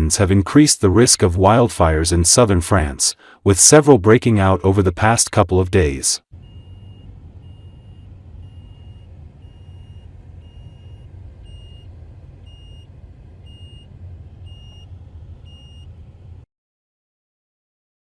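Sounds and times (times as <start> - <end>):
low engine rumble: 0.0 - 16.5
reversing alarm beeping: 6.4 - 16.0.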